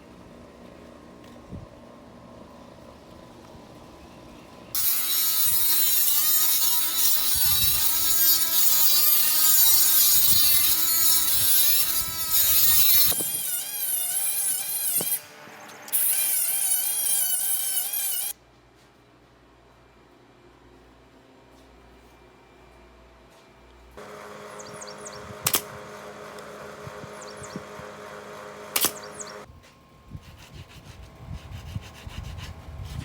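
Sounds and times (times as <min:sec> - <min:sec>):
power tool motor whining: 0:04.8 - 0:18.3, 0:24.0 - 0:29.5.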